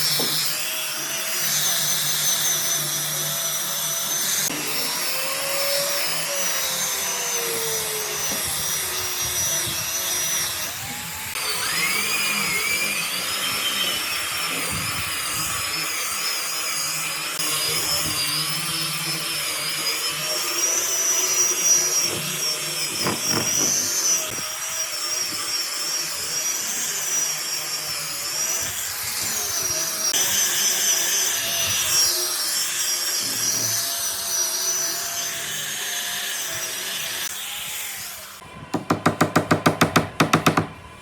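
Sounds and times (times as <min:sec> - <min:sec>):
power tool whining on wood: 0:00.0 - 0:41.0.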